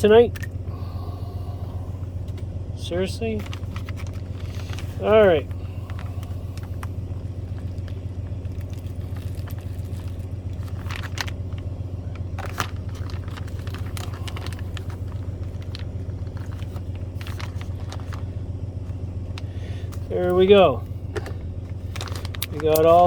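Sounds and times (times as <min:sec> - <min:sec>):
low hum: 0:00.0 - 0:23.0
plastic bag crinkling: 0:03.4 - 0:18.4, 0:21.1 - 0:23.0
crackles and clicks: 0:05.6 - 0:20.0, 0:21.2 - 0:23.0.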